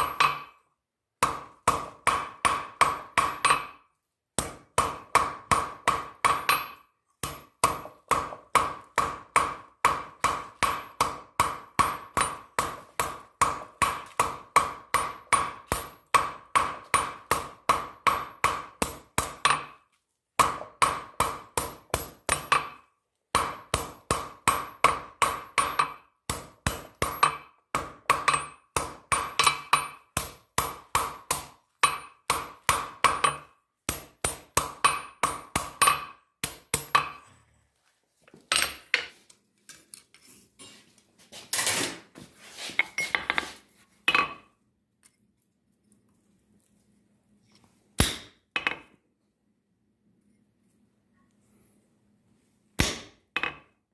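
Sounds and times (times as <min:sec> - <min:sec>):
hammer striking steel on anvil: 0:00.0 - 0:00.6, 0:01.2 - 0:19.8, 0:20.4 - 0:37.3, 0:48.0 - 0:48.9, 0:52.8 - 0:53.7.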